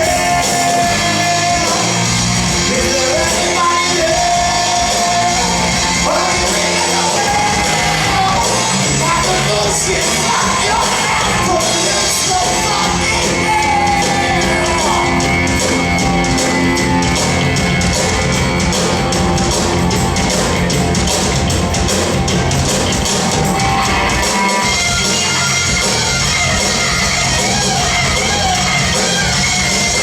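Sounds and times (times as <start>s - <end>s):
shouted strained singing: 0.0s - 15.5s
drums and cymbals: 0.0s - 30.0s
live rock band: 0.0s - 30.0s.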